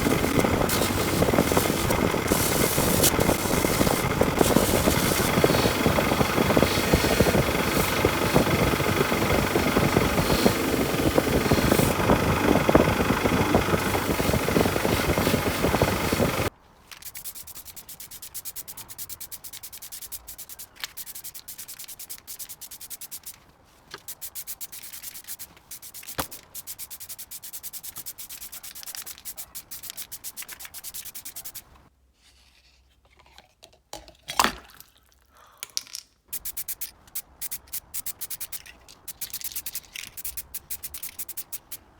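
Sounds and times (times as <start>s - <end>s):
loud grinding hiss on metal: 0.0s - 12.8s
fine rapid rasping clicks: 0.0s - 23.4s, 24.0s - 31.8s, 36.3s - 41.9s.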